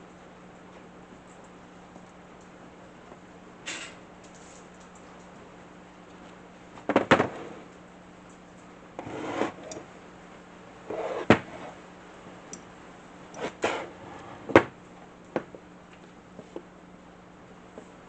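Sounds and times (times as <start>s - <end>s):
scraping and sliding of parts: 9.0s - 9.8s, 10.9s - 11.8s, 13.4s - 14.6s.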